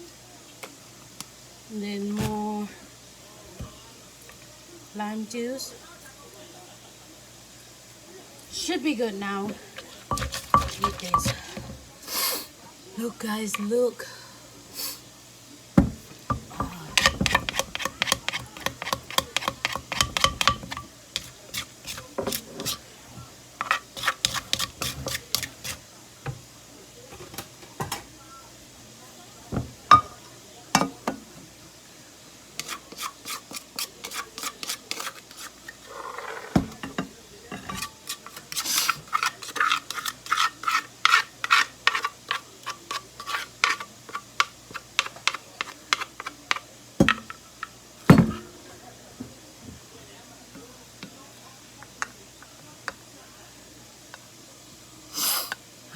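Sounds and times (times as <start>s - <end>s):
utensil clinking against dish: 9.5s - 11.8s, 15.8s - 22.9s, 23.6s - 26.4s, 29.5s - 31.2s, 36.5s - 48.6s.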